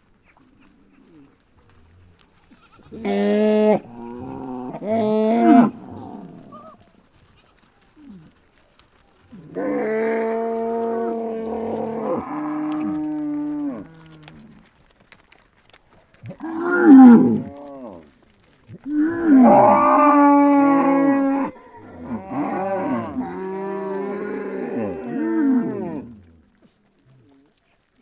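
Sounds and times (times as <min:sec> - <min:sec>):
cows mooing: 0:02.7 - 0:06.8, 0:09.3 - 0:14.6, 0:16.2 - 0:18.1, 0:18.8 - 0:26.2.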